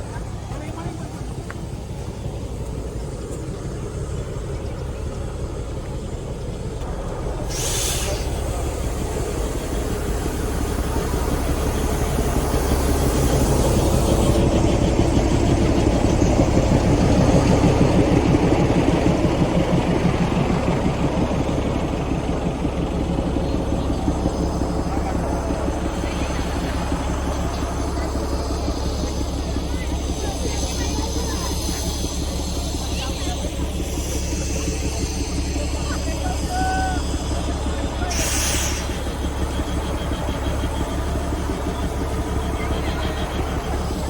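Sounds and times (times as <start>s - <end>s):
train rumble and clatter: 0.0s - 44.0s
short hiss: 7.5s - 10.2s, 38.1s - 39.2s.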